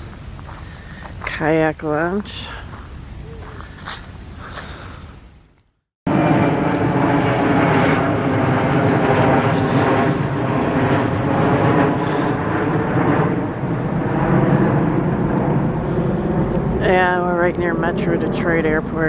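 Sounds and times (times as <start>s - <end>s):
airplane engine drone: 6.1s - 19.0s.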